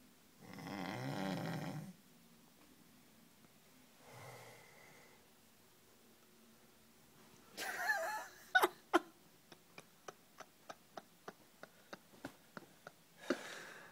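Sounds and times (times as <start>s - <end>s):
loud snore: 0.4s - 2.0s.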